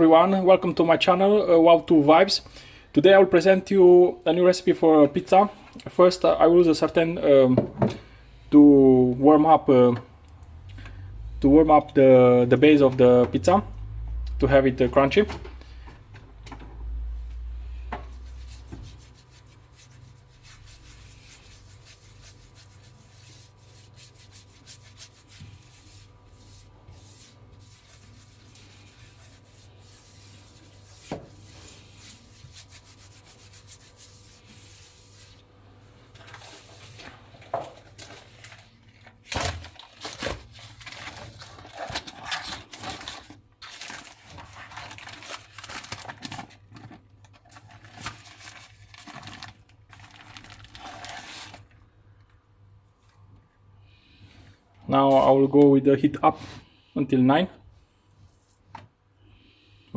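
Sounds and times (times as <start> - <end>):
rubbing and scraping in a pan: 17.2 - 51.7.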